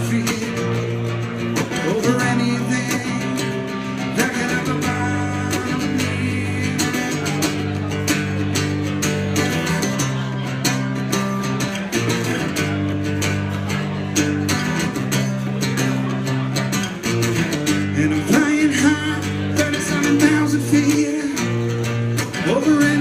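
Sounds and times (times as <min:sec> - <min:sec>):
person singing: 0:00.0 - 0:08.0, 0:17.8 - 0:23.0
strummed guitar: 0:00.0 - 0:23.0.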